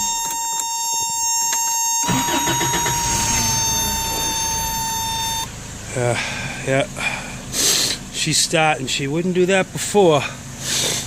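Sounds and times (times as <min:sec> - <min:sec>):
high-pitched warning buzzer: 0:00.0 - 0:05.5
car engine cranking and starting: 0:02.0 - 0:08.6.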